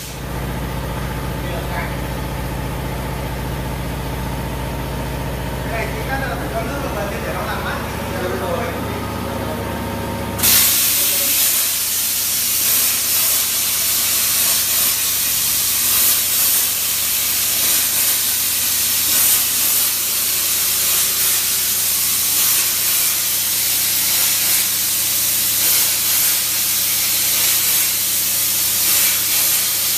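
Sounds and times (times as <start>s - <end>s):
plasma cutter torch hissing: 0.0s - 0.3s, 10.4s - 29.9s.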